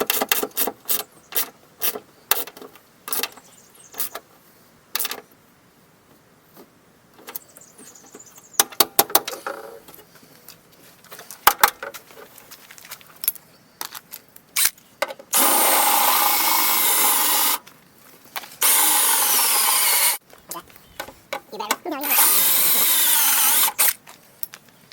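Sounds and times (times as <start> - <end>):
cordless drill running: 15.4 - 17.6, 18.6 - 20.2, 22.0 - 23.9.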